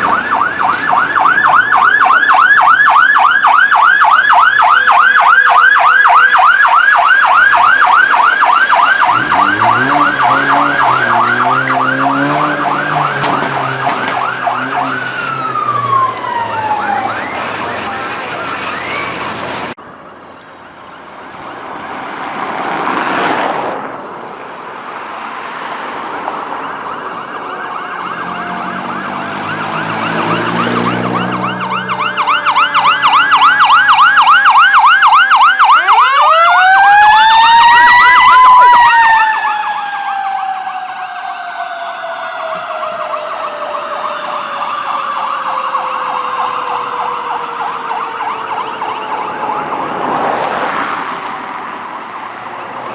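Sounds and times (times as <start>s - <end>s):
fast yelping siren: 0.0s - 19.7s, 26.6s - 51.2s
wailing siren: 0.0s - 23.0s, 26.0s - 52.9s
engine and road noise: 0.0s - 52.9s.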